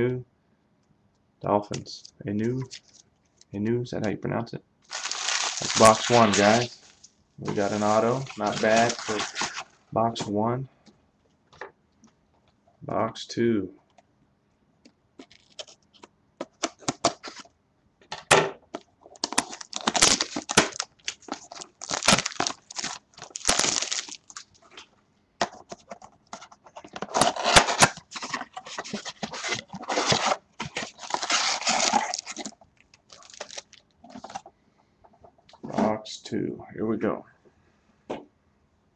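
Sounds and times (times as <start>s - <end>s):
packaging tearing and crinkling: 4.9s - 9.8s, 15.2s - 15.8s, 19.1s - 24.8s, 26.8s - 34.4s.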